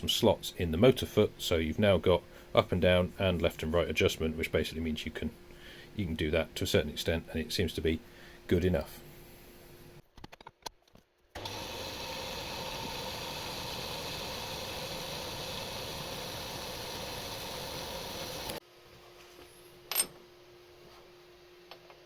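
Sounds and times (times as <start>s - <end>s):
faint steady hum: 0.0s - 10.0s
bandsaw running: 11.4s - 18.6s.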